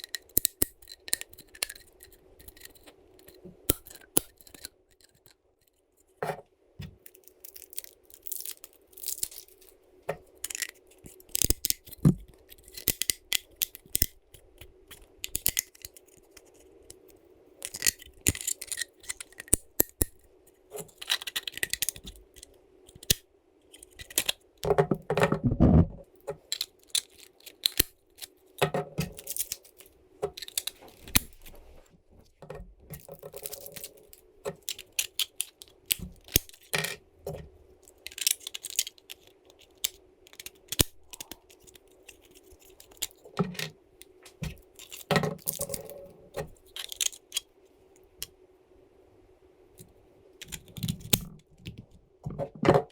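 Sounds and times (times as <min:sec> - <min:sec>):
small parts clicking and clinking: 0:00.0 - 0:25.4, 0:26.0 - 0:31.5, 0:32.4 - 0:47.5, 0:49.8 - 0:52.9
faint steady hum: 0:00.0 - 0:52.9
rustling scrape: 0:30.6 - 0:32.3.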